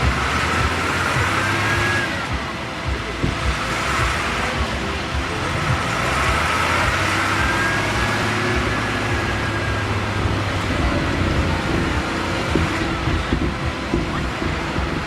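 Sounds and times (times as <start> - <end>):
harvesting machinery engine hum: 0.0 - 15.0.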